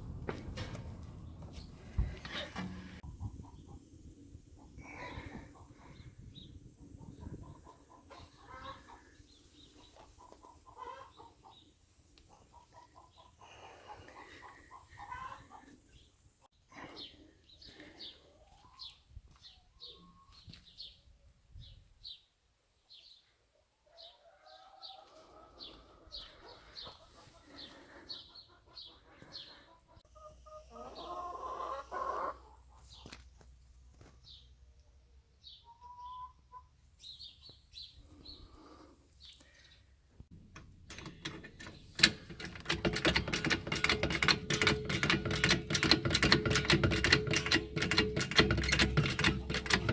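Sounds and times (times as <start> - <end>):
hens clucking: 2.3 - 16.1, 25.0 - 33.2
small bird chirping: 35.4 - 38.6
loud rapid clicking: 40.5 - 49.9.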